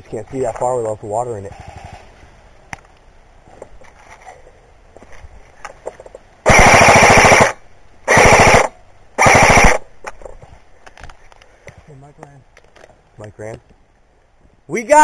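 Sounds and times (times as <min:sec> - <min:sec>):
airsoft gun firing bursts: 0:06.4 - 0:09.9.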